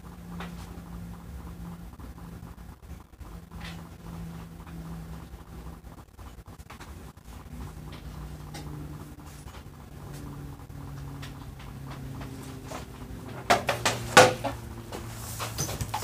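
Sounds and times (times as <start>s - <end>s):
low hum: 0.0s - 16.0s
knocks and clattering: 6.3s - 16.0s.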